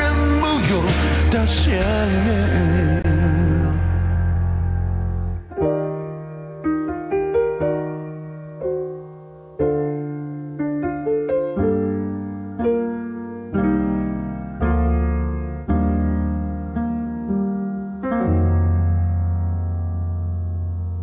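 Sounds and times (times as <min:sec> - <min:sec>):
band playing: 0:00.0 - 0:05.5
piano notes and chords: 0:00.0 - 0:21.0.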